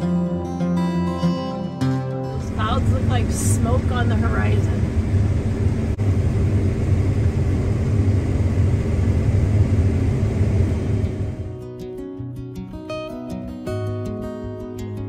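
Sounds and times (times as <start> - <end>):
farm machinery engine rumbling: 2.4 - 11.6.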